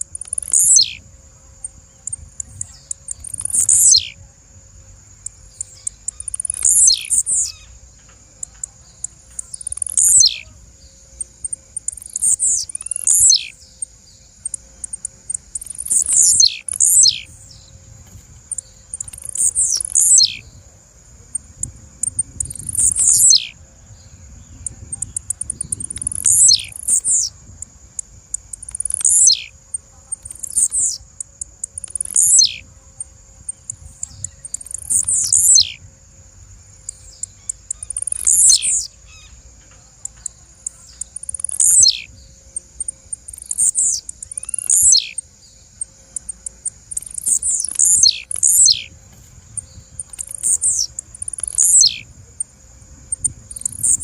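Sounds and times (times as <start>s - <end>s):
bird chips: 0.0s - 1.0s, 1.6s - 4.2s, 5.3s - 20.6s, 21.2s - 23.6s, 24.5s - 32.7s, 33.5s - 35.8s, 36.8s - 52.1s, 53.1s - 54.0s
bird singing descending notes: 0.0s - 4.2s, 5.2s - 32.8s, 33.4s - 35.9s, 36.7s - 39.4s, 40.0s - 54.0s.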